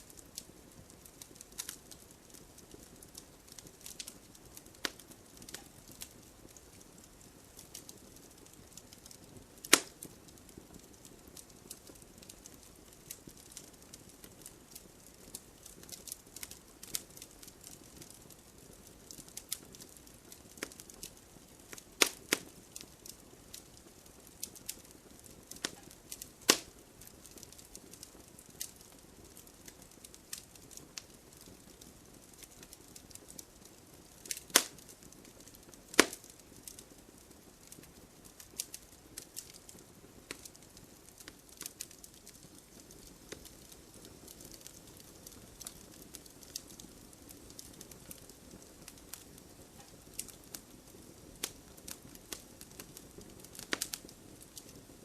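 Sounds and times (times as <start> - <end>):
wood fire crackling: 0.0 - 55.0
logs popping: 25.6 - 26.7, 34.2 - 34.8, 35.9 - 36.3.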